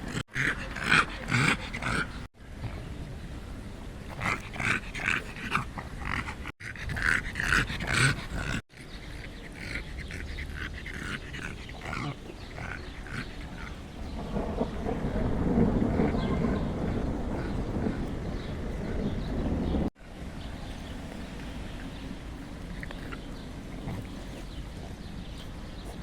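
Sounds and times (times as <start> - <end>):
dog making pig-like grunts: 0.0 - 2.3, 4.1 - 13.9, 22.8 - 26.0
steady low rumble: 9.9 - 26.0.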